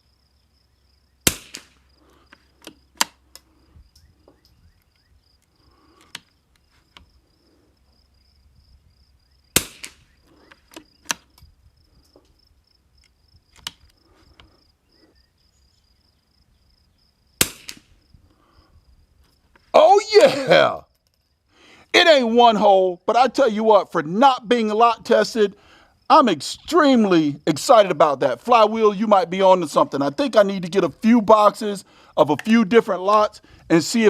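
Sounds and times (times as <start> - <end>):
rifle shots cracking: 1.2 - 1.8, 9.5 - 10.1, 17.4 - 18.0
sharp clicks: 1.3 - 7.1, 9.6 - 12.4, 13.0 - 14.5.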